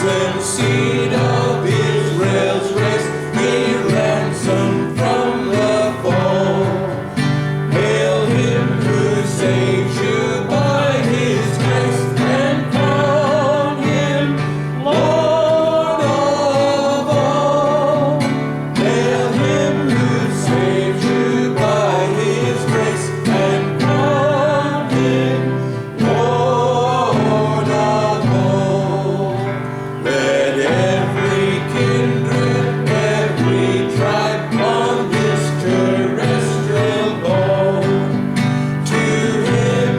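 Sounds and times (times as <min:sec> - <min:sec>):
person singing a hymn: 0:00.0 - 0:39.9
plucked guitar: 0:00.0 - 0:39.9.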